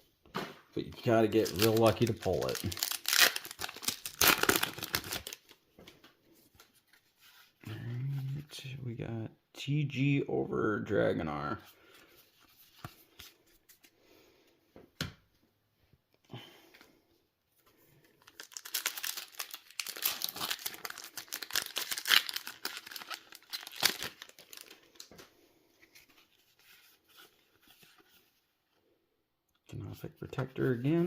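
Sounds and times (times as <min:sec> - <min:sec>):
cards rustling: 0:01.0 - 0:08.4, 0:11.8 - 0:14.0, 0:18.0 - 0:28.4
foil wrapper crackling: 0:01.4 - 0:05.5, 0:18.2 - 0:25.1.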